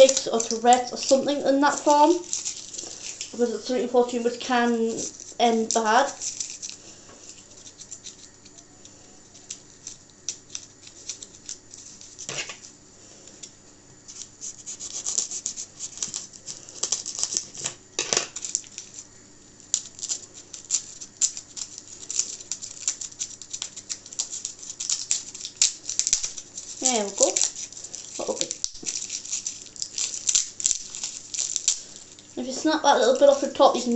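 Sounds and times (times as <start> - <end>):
food package crackling: 0.0 - 12.8, 13.4 - 33.9.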